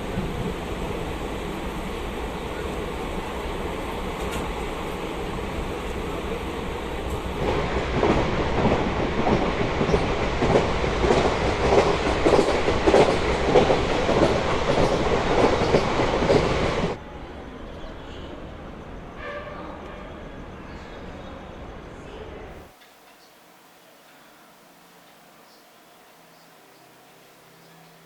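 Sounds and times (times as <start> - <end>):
train wheels clattering over rails: 4.0 - 4.8, 7.0 - 17.0.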